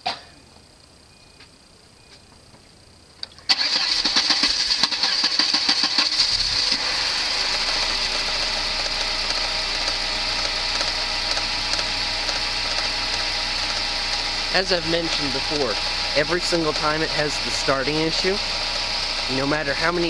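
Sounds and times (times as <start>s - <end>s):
car engine idling: 2.9s - 20.0s
starter cranking engine: 3.5s - 17.3s.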